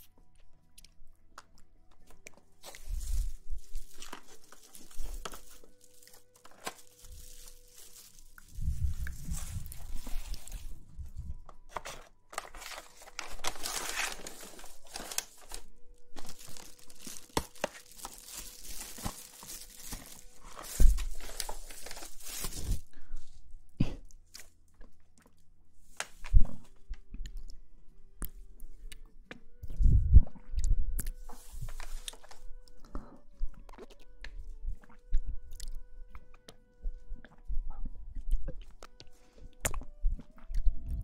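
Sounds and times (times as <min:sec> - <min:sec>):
rustling and crinkling: 0:01.4 - 0:23.5, 0:31.0 - 0:37.5.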